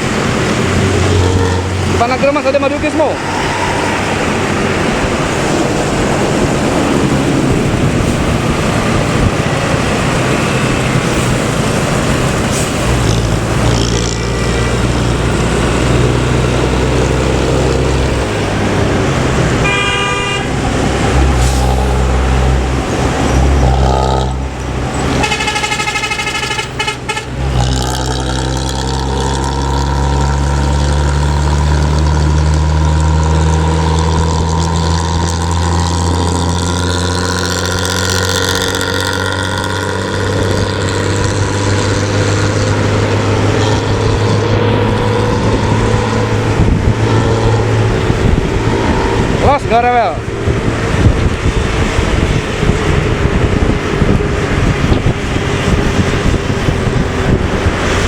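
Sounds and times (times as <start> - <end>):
buses on highway: 0.0 - 58.0
diesel engine drone: 0.0 - 58.0
repeated horn notes: 0.7 - 5.2, 19.6 - 29.6
bus horn blast: 0.9 - 4.5, 19.6 - 21.7, 25.0 - 28.1.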